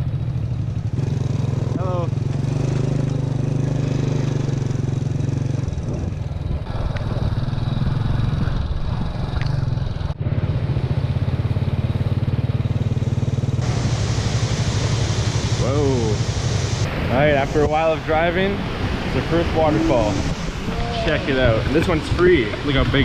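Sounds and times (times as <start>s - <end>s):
motorbike engine running: 0.0s - 17.0s
wind and road noise: 0.0s - 23.0s.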